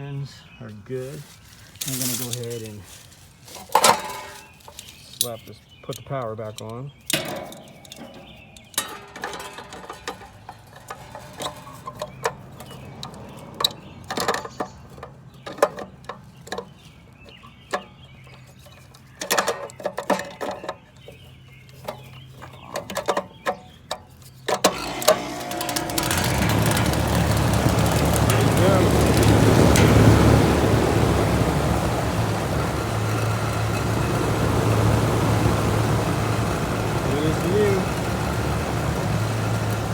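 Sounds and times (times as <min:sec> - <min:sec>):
air conditioner unit running: 0:24.7 - 0:39.9.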